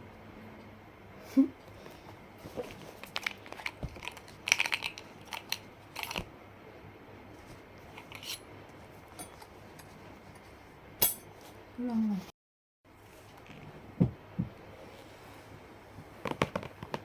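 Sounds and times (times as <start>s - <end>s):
packaging clicks and crinkling: 2.6s - 6.3s.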